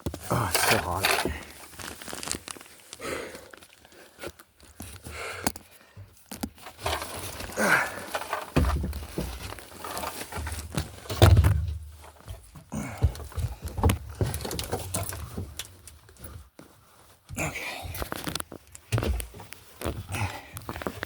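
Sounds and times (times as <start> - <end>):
footsteps on attic joists: 4.2 - 21.0
insulation rustling: 6.5 - 12.6.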